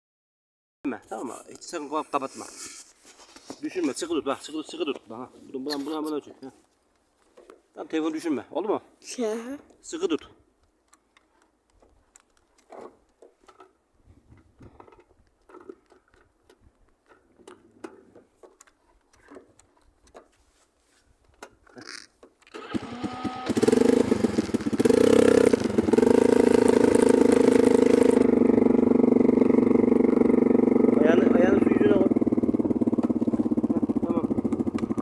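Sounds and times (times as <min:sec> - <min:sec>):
engine starting and running: 0:22.5 - 0:35.0.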